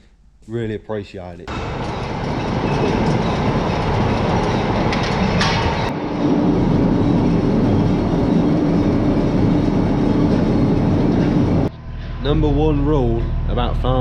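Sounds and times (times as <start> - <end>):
harvest machinery rattling: 1.5 - 11.7
engine drone: 1.5 - 14.0.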